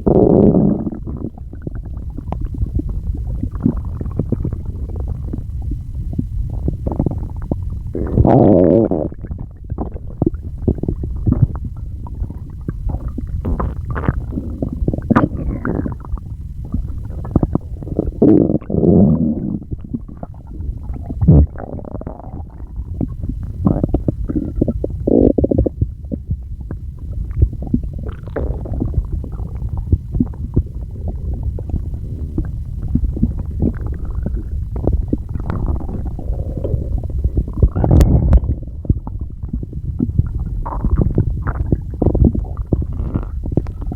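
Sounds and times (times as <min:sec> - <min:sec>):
stomach gurgling and growling: 0:00.0 - 0:43.9.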